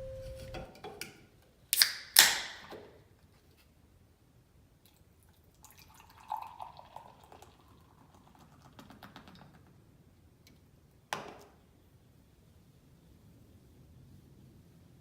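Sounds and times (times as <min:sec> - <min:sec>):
beer pouring into a glass: 0:05.3 - 0:08.9.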